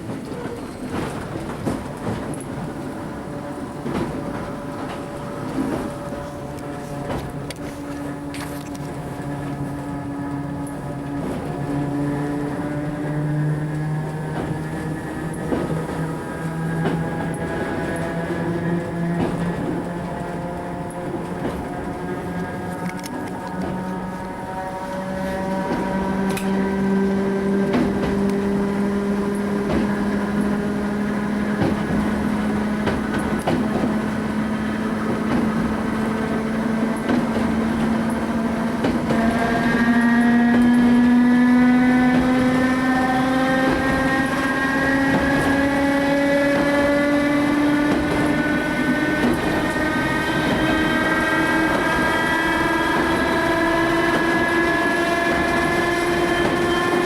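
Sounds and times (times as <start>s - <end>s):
train motors whining: 0.0s - 57.0s.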